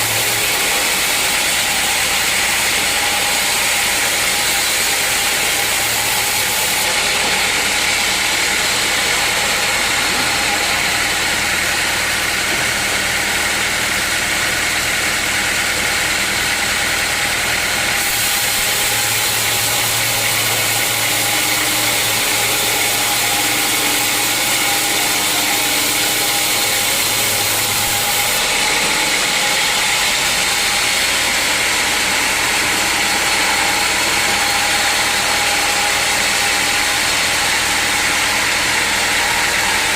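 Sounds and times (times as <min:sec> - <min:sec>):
sawmill saw and motor: 0:00.0 - 0:39.9
steady whine: 0:17.1 - 0:39.9.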